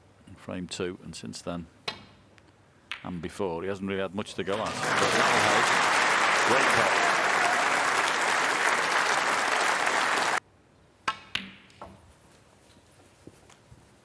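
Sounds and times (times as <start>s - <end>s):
audience applauding: 4.5s - 10.4s.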